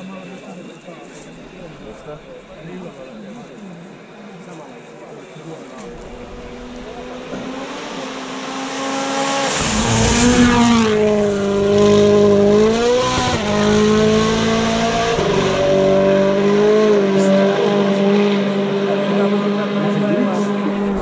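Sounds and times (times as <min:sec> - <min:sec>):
car engine revving hard: 0:05.9 - 0:21.0.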